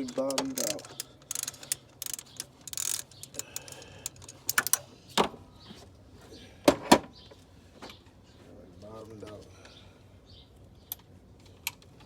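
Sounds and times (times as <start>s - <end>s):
metal hand tools clicking: 0.0s - 4.8s.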